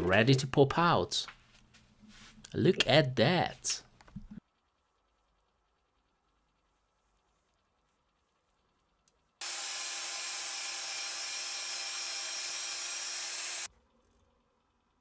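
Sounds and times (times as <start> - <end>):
power tool motor running: 9.4 - 13.7.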